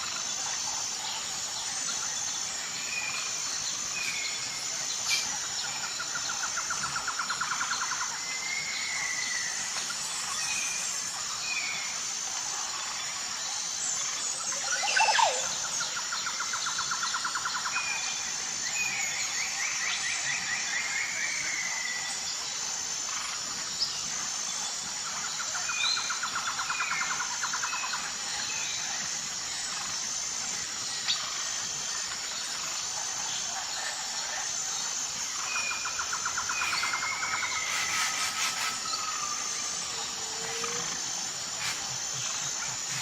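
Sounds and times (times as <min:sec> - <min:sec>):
insects chirring: 0:00.0 - 0:43.0
birds whistling and trilling: 0:35.5 - 0:41.0.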